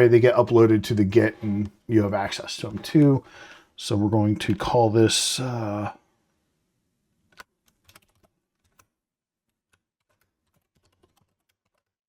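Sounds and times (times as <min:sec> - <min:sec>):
keyboard typing: 0:07.3 - 0:08.9, 0:09.5 - 0:12.0.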